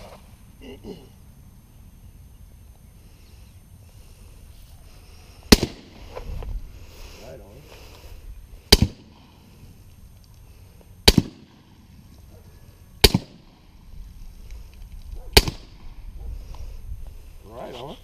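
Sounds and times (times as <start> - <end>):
suppressed pistol shots: 5.5 - 6.0, 8.7 - 9.3, 11.0 - 11.8, 13.0 - 13.6, 15.3 - 16.0.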